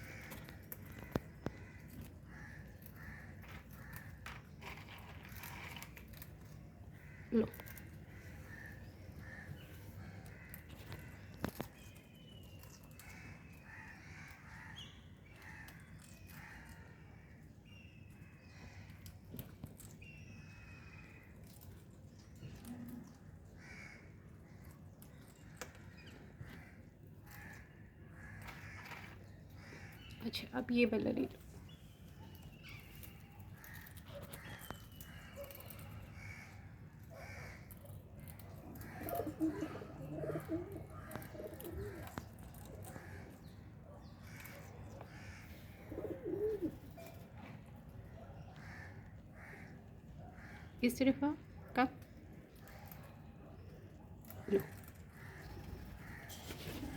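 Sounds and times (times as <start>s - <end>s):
birds giving harsh calls: 25.4s - 47.2s.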